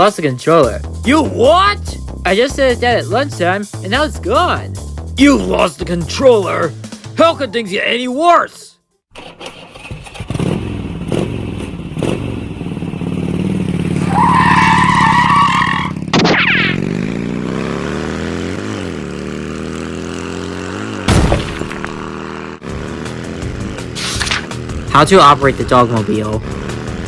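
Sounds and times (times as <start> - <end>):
engine starting and revving: 9.1 - 14.9.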